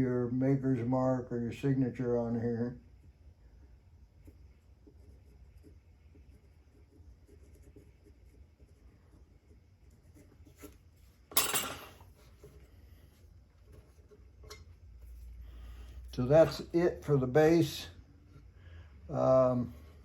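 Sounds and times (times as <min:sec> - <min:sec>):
tool scratching clay: 0:03.6 - 0:10.9.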